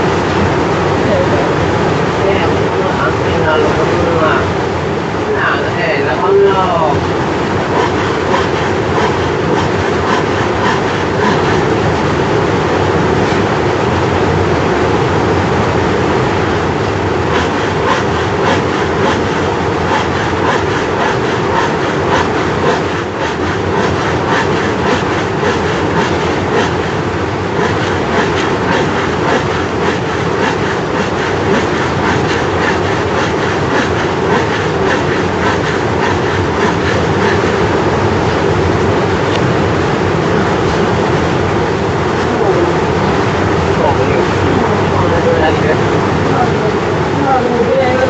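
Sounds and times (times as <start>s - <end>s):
loud rumbling rattling noise: 0.0s - 48.0s
rapid clicks: 7.1s - 12.0s, 16.8s - 38.4s.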